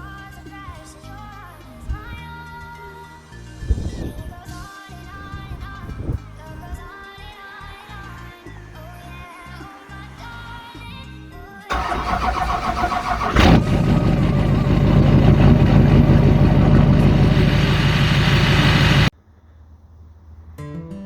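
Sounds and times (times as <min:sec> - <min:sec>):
engine running loud: 0:11.7 - 0:19.1
sharp engine burst: 0:11.7 - 0:19.1.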